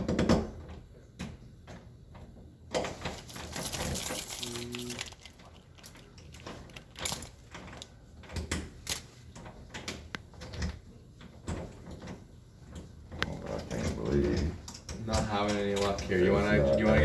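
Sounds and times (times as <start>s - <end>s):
lock picks clicking and scraping: 2.8s - 10.0s.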